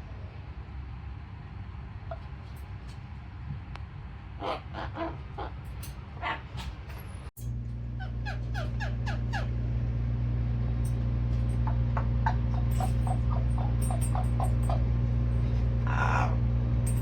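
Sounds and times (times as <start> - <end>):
steady low hum: 0.0 - 17.0
parrot chirping: 8.0 - 9.6, 11.6 - 14.9.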